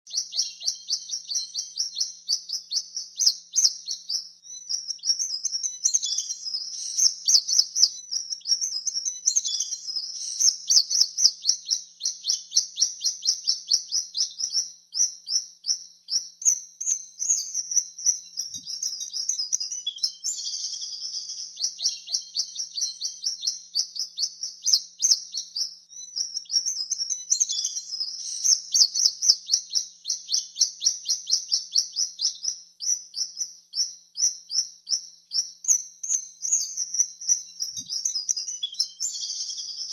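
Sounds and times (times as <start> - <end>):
swallows twittering: 0.1 - 14.6, 16.5 - 31.8.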